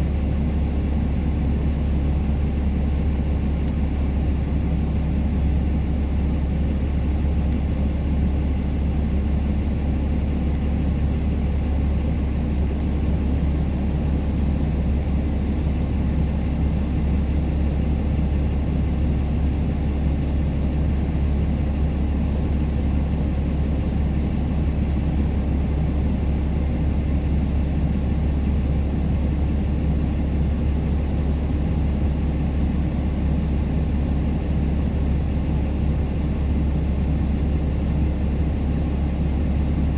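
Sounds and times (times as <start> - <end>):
vehicle engine and road noise: 0.0 - 39.9.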